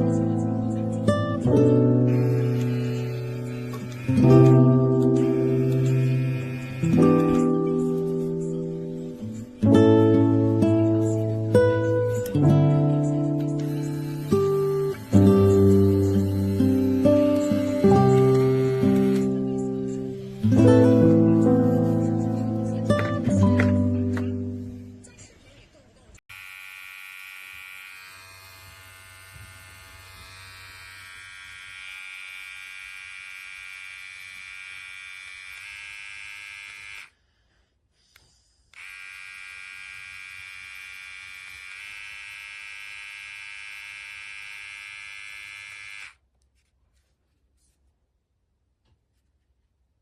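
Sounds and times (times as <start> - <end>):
beard trimmer buzzing: 1.6 - 9.4, 13.1 - 19.9, 26.3 - 37.2, 38.7 - 46.2.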